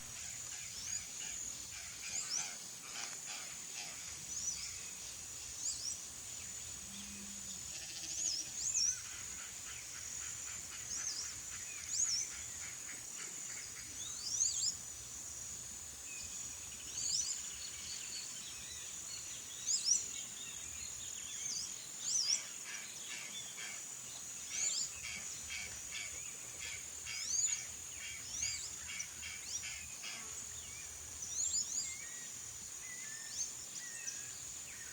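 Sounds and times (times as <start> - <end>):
high insect buzz: 0.1 - 10.6.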